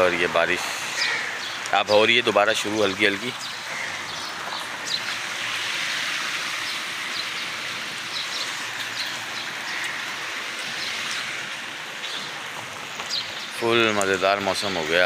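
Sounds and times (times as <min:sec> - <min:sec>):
light rain falling: 0:00.0 - 0:15.0
raindrops ticking: 0:06.8 - 0:15.0.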